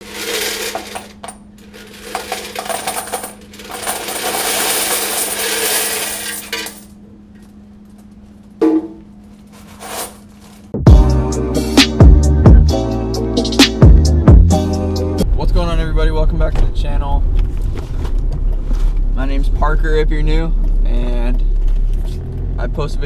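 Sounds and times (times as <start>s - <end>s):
coins pouring and rattling: 0.0s - 6.9s, 9.7s - 10.3s.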